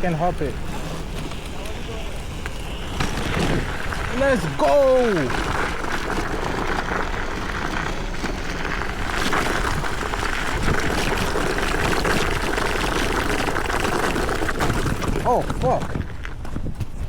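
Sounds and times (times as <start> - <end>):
tyres crunching on gravel: 0.0 - 17.0
wind rushing over microphone: 14.4 - 17.0.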